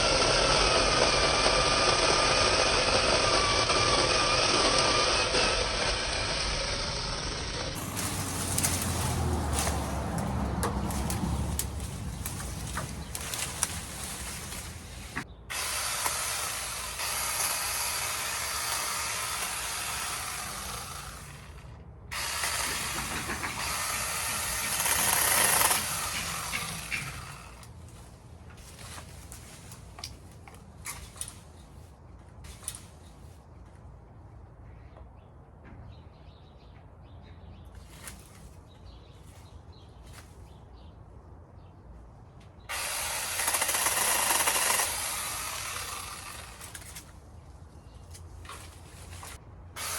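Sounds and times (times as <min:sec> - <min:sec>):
mini chainsaw cutting branches: 0:00.0 - 0:28.0, 0:42.7 - 0:47.2, 0:48.1 - 0:49.9
branches snapping and rustling: 0:07.7 - 0:33.9, 0:37.7 - 0:40.6, 0:42.7 - 0:49.9.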